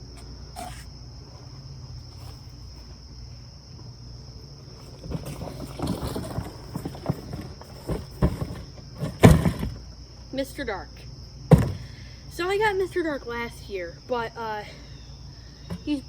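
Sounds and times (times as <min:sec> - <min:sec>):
crickets trilling: 0:00.0 - 0:16.0
rustling and knocks of handling: 0:04.7 - 0:09.9.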